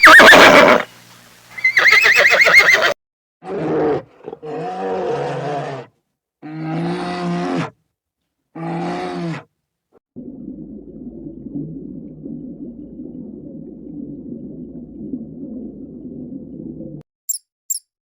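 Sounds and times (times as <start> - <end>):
horse whinnying: 0.0 - 0.8, 1.6 - 3.0.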